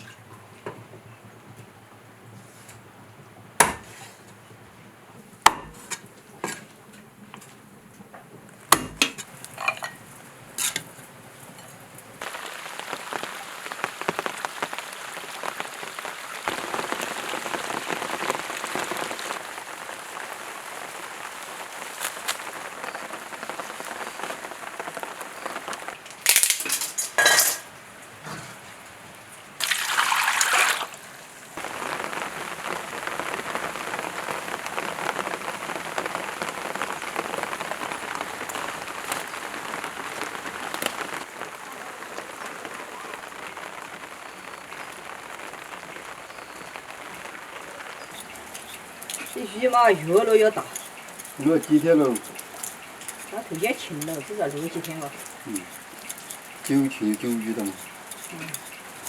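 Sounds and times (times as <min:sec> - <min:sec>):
pots and utensils clinking: 0:08.7 - 0:11.8, 0:26.3 - 0:27.7, 0:48.1 - 0:59.0
steady hiss: 0:09.1 - 0:59.0.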